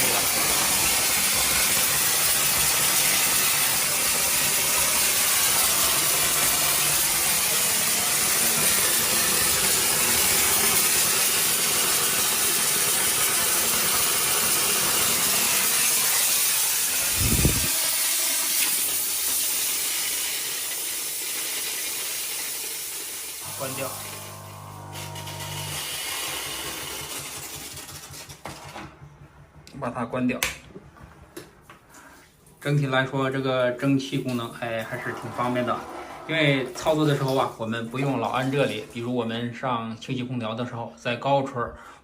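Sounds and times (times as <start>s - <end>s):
steam hissing: 0.0s - 28.3s.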